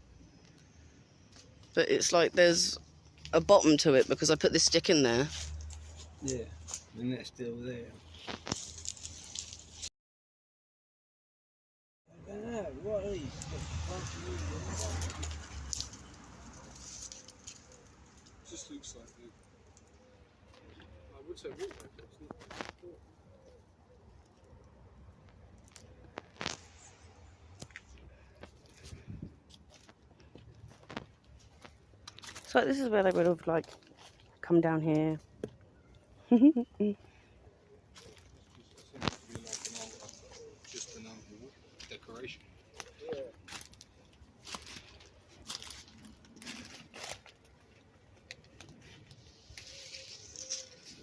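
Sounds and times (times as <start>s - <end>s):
faint crunches and clicks: 8.1s - 9.9s, 21.5s - 34.4s, 41.8s - 51.0s.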